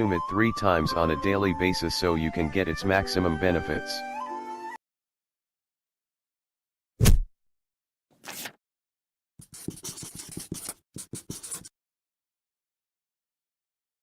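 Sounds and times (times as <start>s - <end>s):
rapid scratching: 9.4s - 11.7s.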